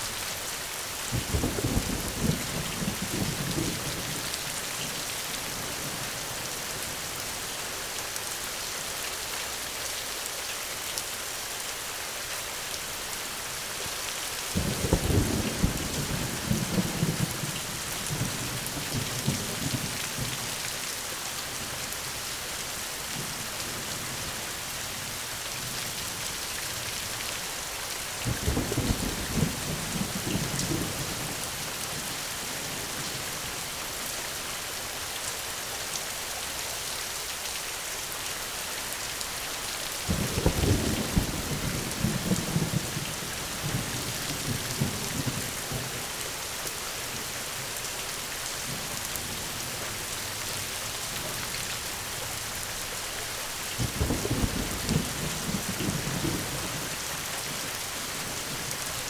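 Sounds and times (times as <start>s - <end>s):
steady rain falling: 0.0s - 59.0s
thunder rumbling: 53.8s - 57.0s.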